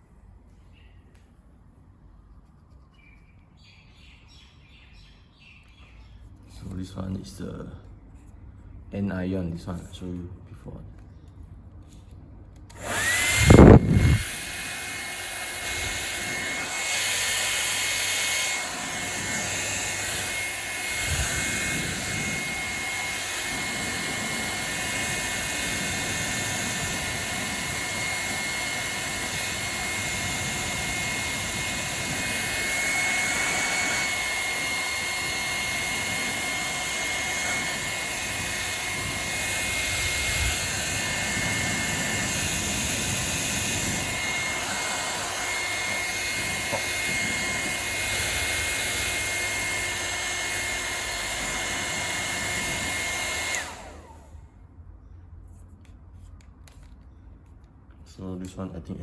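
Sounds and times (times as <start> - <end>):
hair dryer running: 12.6 - 54.5.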